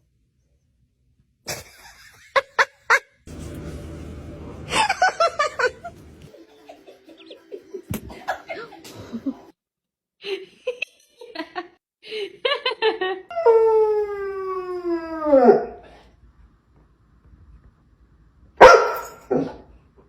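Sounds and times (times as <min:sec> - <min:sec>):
person laughing: 0:04.7 - 0:09.5.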